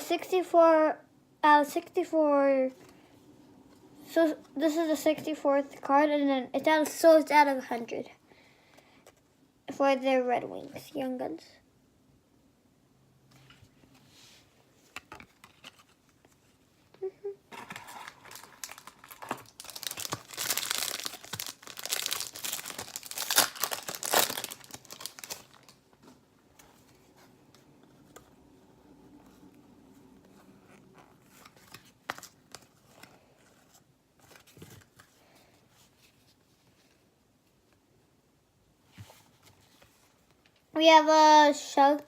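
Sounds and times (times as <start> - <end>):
wrapper tearing and crinkling: 17.5 - 25.8.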